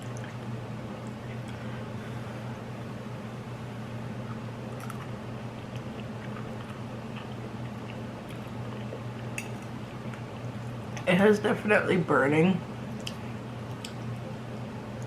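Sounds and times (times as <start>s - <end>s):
steady low hum: 0.0s - 15.0s
chewing noodles: 4.3s - 11.0s.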